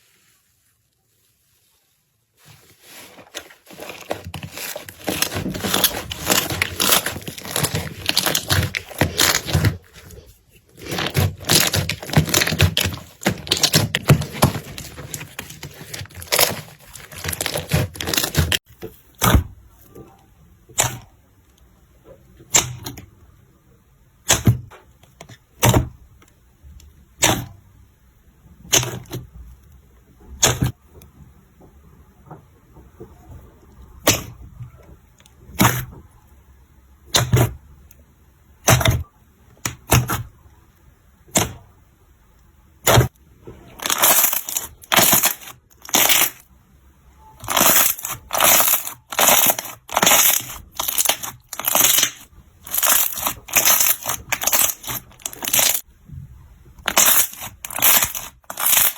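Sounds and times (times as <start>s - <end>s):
slime crackling and squishing: 0.0s - 18.7s, 42.8s - 46.4s, 47.4s - 55.9s, 56.7s - 58.9s
slime popping: 43.8s - 46.4s, 47.4s - 55.8s, 56.9s - 58.9s.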